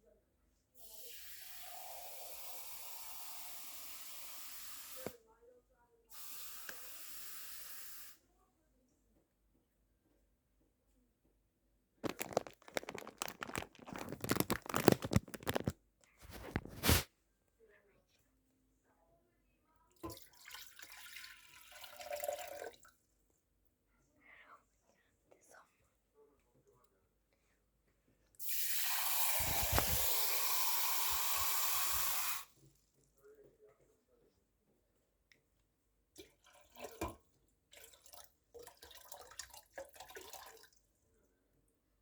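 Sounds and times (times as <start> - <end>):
water running from a tap: 0.8 - 5.1, 28.4 - 32.5
plastic packet crinkling and tearing: 12.0 - 17.0, 29.4 - 30.0.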